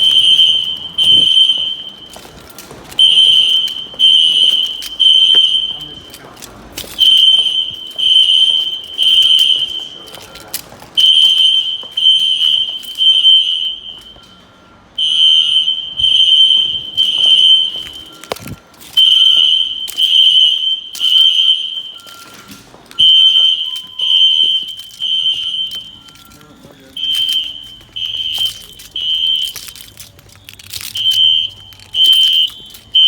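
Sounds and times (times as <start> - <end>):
fire alarm horn blasts: 0.0 - 33.0.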